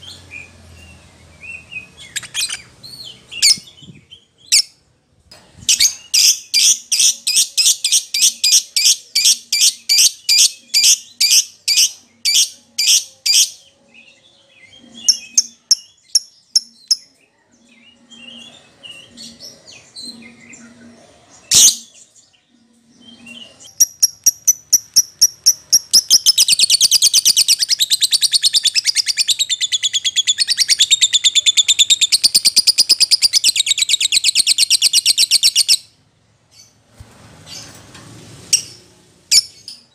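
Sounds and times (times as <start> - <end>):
lovebird chirping and trilling: 1.4 - 4.7, 5.7 - 13.6, 14.8 - 17.1, 23.0 - 35.9, 38.5 - 39.9.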